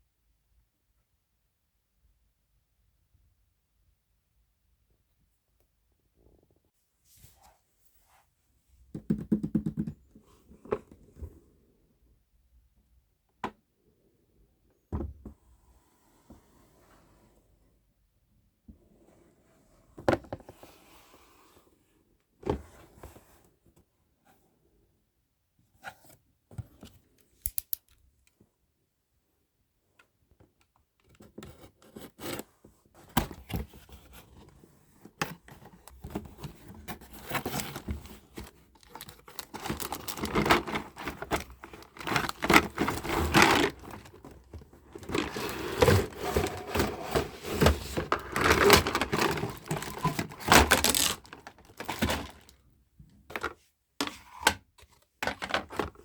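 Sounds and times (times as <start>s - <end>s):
packaging tearing and crinkling: 38.8s - 44.1s, 48.3s - 52.5s.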